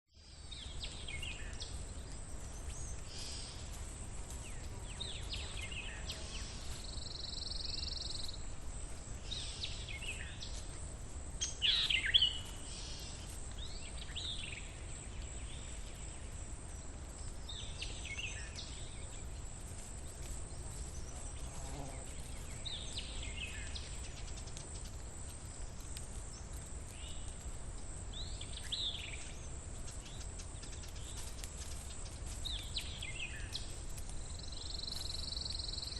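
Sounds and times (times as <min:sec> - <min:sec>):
birds chirping: 0:00.2 - 0:10.8.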